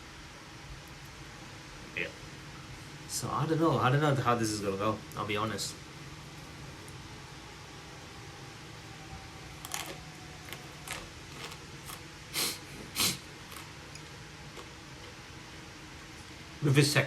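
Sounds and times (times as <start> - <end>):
low room hum: 0.0 - 17.0.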